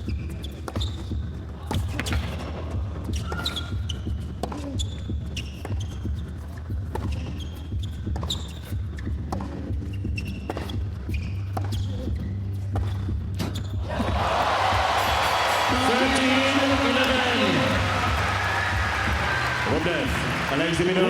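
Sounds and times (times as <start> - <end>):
shoes squeaking on court: 0.0 - 16.7.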